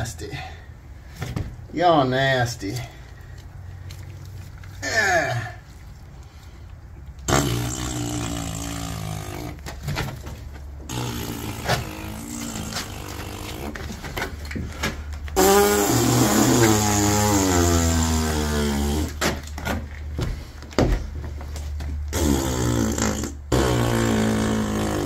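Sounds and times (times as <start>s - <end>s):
filler squeezed from plastic bag: 7.2s - 9.6s, 10.9s - 13.8s, 15.4s - 19.2s.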